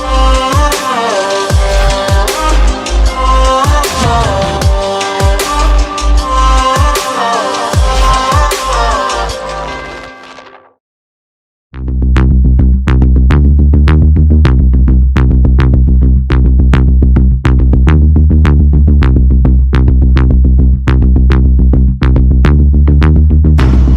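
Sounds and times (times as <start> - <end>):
drum machine beat: 0.0 - 9.4
synthesizer bass: 0.0 - 10.4, 11.8 - 23.9.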